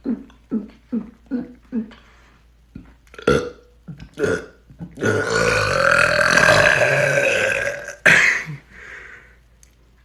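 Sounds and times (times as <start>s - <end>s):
man burping: 3.1s - 8.7s.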